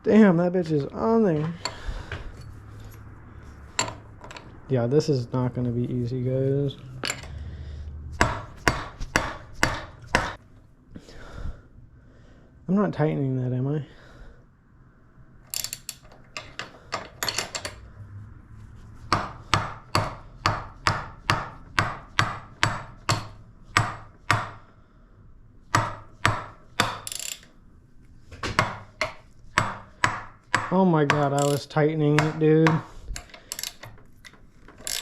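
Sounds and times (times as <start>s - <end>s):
ratchet wrench clicking: 15.5s - 17.8s, 26.8s - 27.6s, 31.1s - 31.8s, 33.2s - 35.0s.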